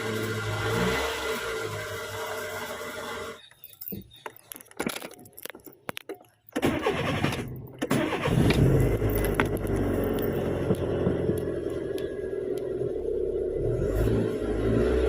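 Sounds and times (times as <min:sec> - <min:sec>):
car starter cranking: 0:06.5 - 0:12.1
car engine running: 0:07.3 - 0:14.4.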